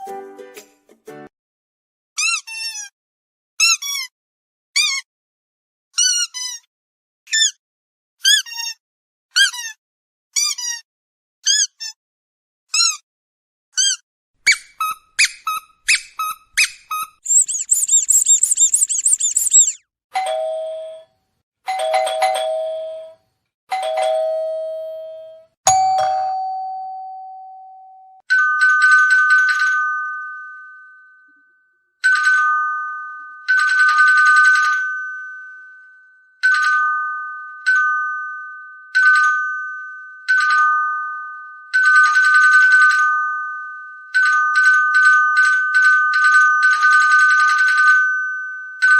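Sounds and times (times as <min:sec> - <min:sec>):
squeaky chirps: 0:02.2 - 0:02.9, 0:06.0 - 0:06.7, 0:07.3 - 0:07.6, 0:11.4 - 0:12.0, 0:12.7 - 0:13.0, 0:13.7 - 0:19.8
high jingling rattle: 0:16.9 - 0:19.8
doorbell ding-dong: 0:21.7 - 0:28.2.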